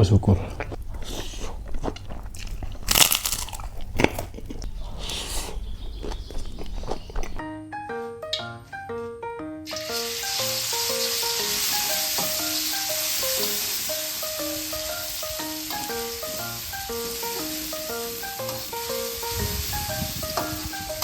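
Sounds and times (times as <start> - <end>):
background music: 7.4 - 21.0
food sizzling in a pan: 9.7 - 21.0.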